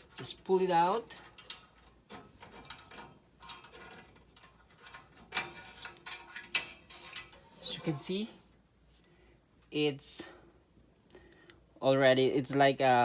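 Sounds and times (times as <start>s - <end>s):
metallic clicks and scrapes: 0.0s - 8.4s.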